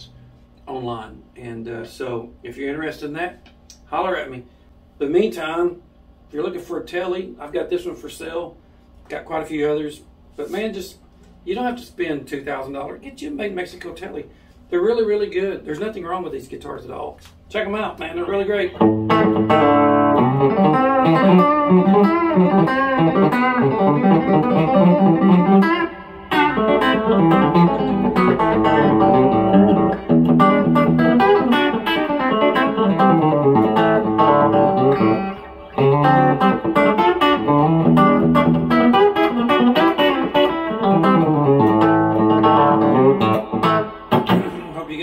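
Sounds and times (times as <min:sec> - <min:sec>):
electric guitar country licks: 0:18.0 - 0:45.0.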